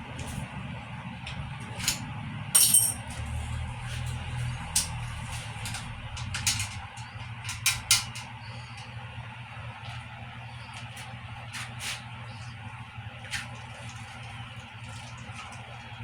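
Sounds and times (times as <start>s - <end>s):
steady low hum: 0.0s - 16.0s
metal tools clinking and rattling: 2.6s - 8.3s.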